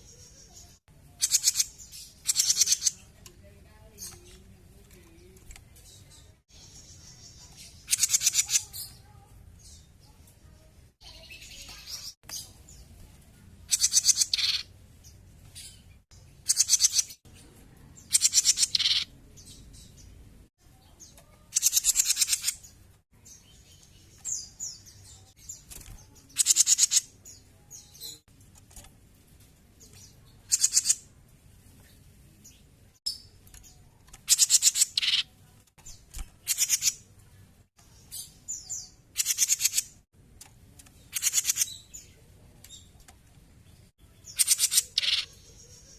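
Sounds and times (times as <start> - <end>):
bird chattering calls: 0.4 - 3.1, 7.6 - 9.0, 13.7 - 14.7, 16.4 - 17.2, 18.1 - 19.1, 21.3 - 22.7, 26.3 - 27.1, 30.5 - 31.0, 34.2 - 35.3, 36.4 - 37.0, 39.1 - 40.0, 41.1 - 42.1, 44.3 - 45.6.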